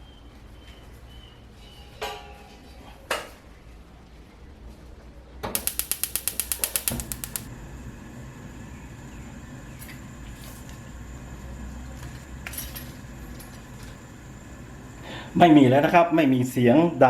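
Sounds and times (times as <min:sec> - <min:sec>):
gas stove igniter clicking: 0:05.6 - 0:07.5
gas burner hissing: 0:05.6 - 0:16.9.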